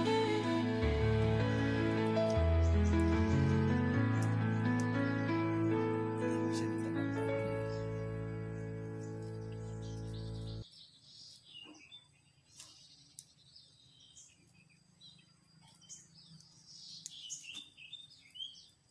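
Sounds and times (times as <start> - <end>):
background music: 0.0 - 10.6
birds chirping: 0.0 - 18.9.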